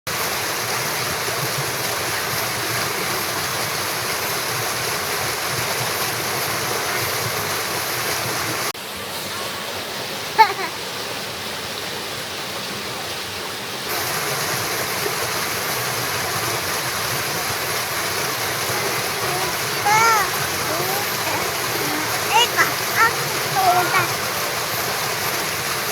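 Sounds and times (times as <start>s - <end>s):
river water rushing: 13.9s - 25.9s.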